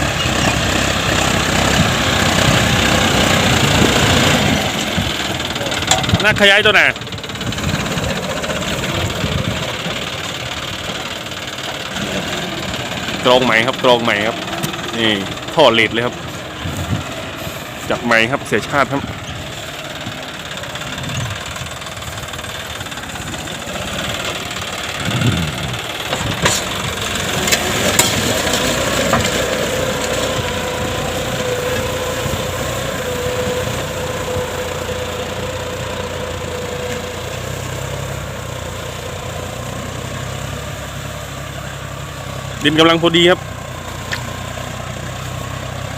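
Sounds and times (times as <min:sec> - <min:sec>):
tractor diesel engine running: 0:00.0 - 0:45.9
sharp clacks: 0:24.1 - 0:30.2.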